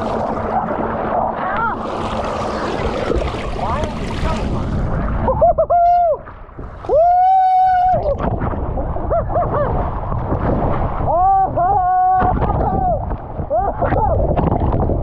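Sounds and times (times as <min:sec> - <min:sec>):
rushing water and air: 0:00.0 - 0:15.0
people yelling and whooping: 0:06.8 - 0:08.2, 0:11.1 - 0:14.2.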